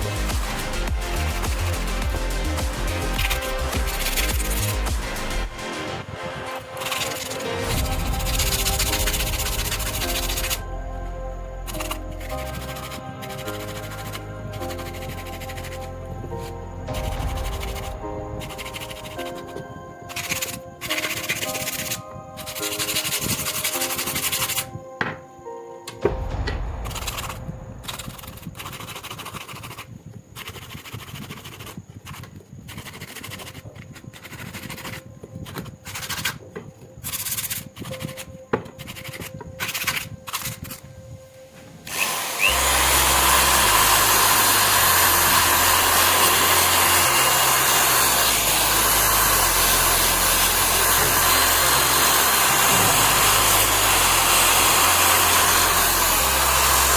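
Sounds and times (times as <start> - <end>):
scraping and rubbing strokes: 0.0 - 10.8, 26.8 - 56.9
music: 0.0 - 29.5, 34.3 - 56.9
power tool running: 41.8 - 56.9.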